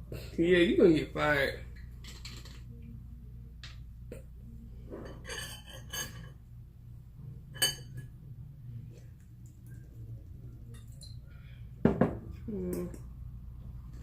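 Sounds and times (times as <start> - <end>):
low steady hum: 0.0 - 14.0
utensils clinking on dishes: 5.0 - 6.4, 7.5 - 8.2.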